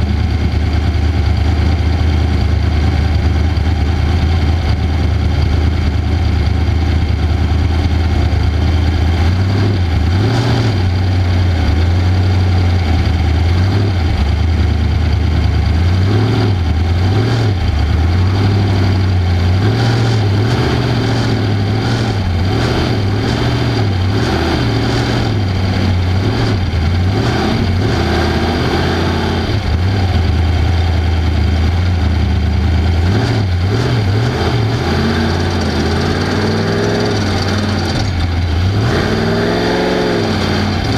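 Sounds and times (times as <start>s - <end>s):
knocks and rattles from rough ride: 0.0s - 40.9s
race vehicle engine revving: 6.8s - 40.9s.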